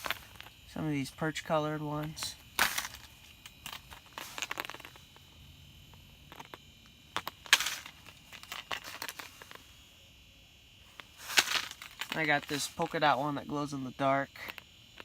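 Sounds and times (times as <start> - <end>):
plastic packaging crinkling: 2.6 - 5.0.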